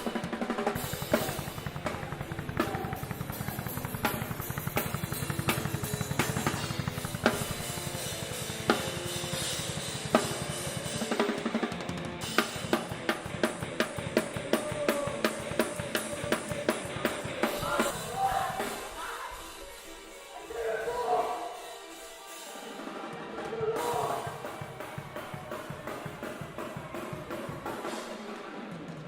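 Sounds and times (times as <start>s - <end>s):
rapid bass drum strokes: 0.0s - 19.9s
drum kit played fast: 0.0s - 29.0s.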